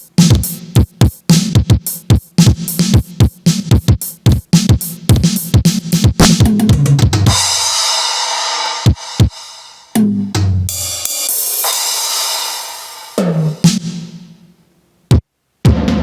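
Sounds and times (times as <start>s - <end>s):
kick drum: 0.0s - 7.5s, 8.9s - 9.4s, 15.1s - 16.0s.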